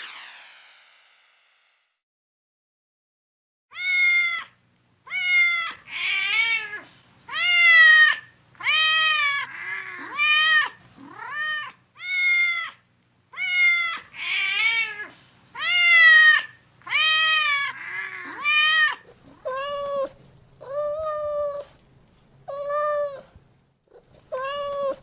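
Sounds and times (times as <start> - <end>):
cat meowing: 3.7 - 12.8, 13.4 - 21.7, 22.5 - 25.0.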